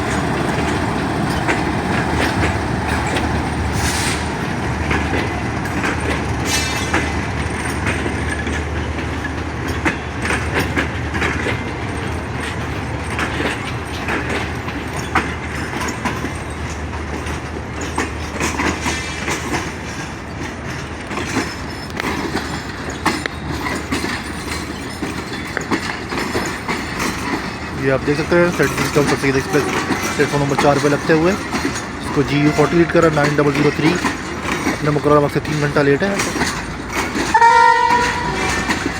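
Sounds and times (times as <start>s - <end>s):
train low rumble: 0.0s - 38.9s
train wheels clicking over rail joints: 0.0s - 38.9s
wheel or brake squeals: 21.5s - 36.6s.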